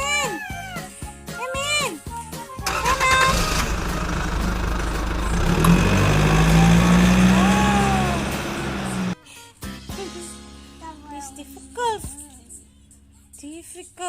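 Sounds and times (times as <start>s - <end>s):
vehicle engine humming: 2.6s - 9.2s.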